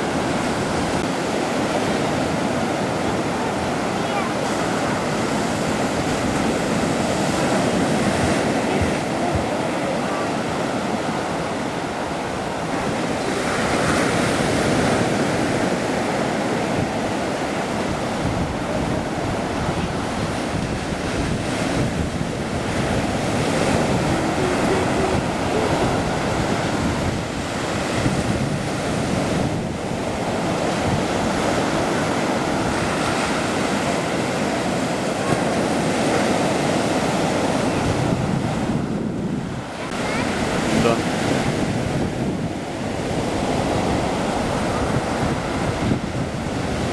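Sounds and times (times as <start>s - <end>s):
surf washing onto shore: 0.0s - 46.9s
wind buffeting microphone: 0.0s - 46.9s.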